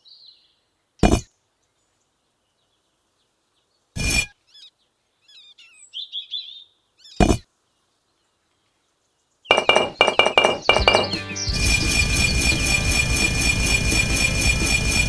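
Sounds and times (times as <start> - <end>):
birds chirping: 9.5 - 14.1.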